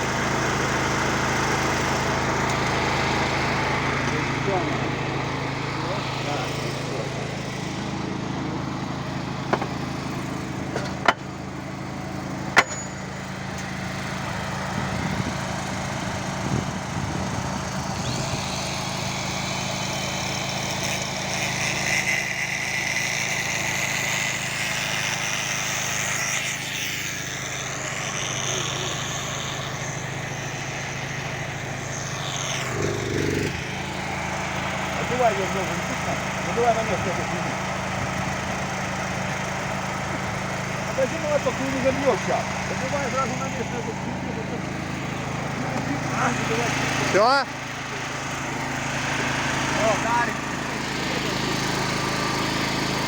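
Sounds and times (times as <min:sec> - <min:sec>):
engine idling: 0:00.0 - 0:53.0
sharp knocks: 0:09.5 - 0:09.8, 0:10.7 - 0:11.3, 0:12.6 - 0:12.9.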